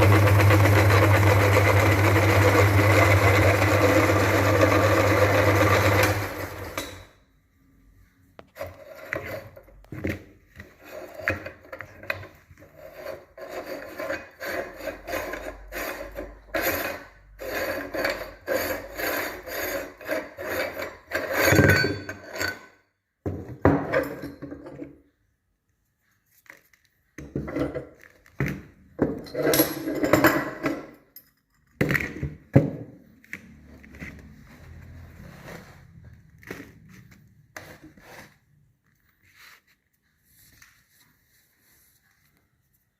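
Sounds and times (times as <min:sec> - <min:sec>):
meat grinder scraping and rasping: 0:00.0 - 0:07.0, 0:12.6 - 0:21.7.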